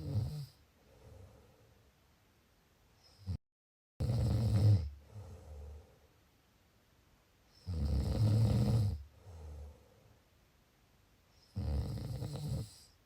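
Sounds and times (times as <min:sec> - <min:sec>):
loud rattling snoring: 0:04.0 - 0:04.9, 0:07.7 - 0:09.0, 0:11.6 - 0:12.8.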